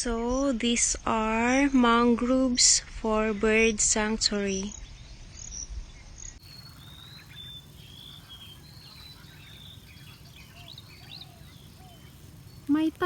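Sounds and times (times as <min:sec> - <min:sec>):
insect and bird chirps: 0:04.7 - 0:13.0
low rumble: 0:06.4 - 0:13.0.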